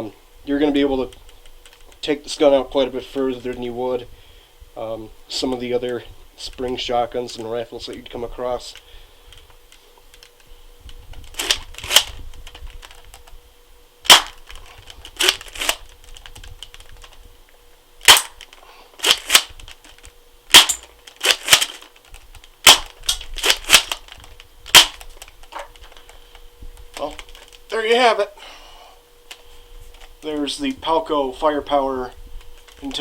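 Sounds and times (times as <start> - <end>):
spring gun shot crack: 14.1 - 14.4, 18.0 - 18.4, 20.5 - 21.8, 22.6 - 24.0, 24.7 - 25.0.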